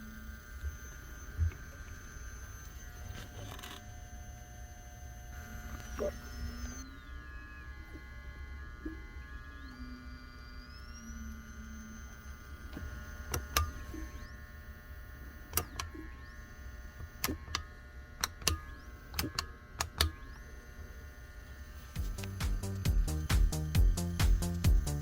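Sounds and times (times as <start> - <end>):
stepper motor whining: 0.0 - 25.0
sharp clicks: 12.7 - 13.9, 15.4 - 16.0, 17.0 - 20.4, 22.0 - 25.0
rhythmic music: 22.0 - 25.0.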